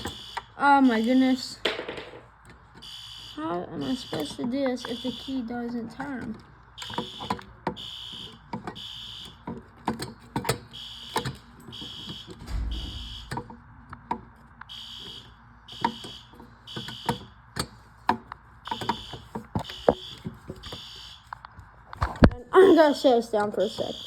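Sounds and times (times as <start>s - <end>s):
fire alarm horn honking: 0.0s - 0.6s, 2.8s - 5.5s, 6.8s - 9.4s, 10.8s - 13.6s, 14.7s - 17.4s, 18.6s - 21.2s, 23.7s - 24.0s
dull thump: 12.4s - 13.6s.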